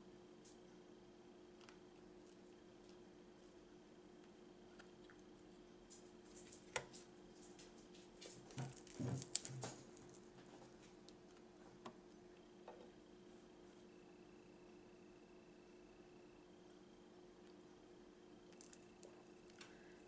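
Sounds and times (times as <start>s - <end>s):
crispy food chewing: 1.5s - 3.6s, 4.2s - 11.4s, 18.5s - 19.8s.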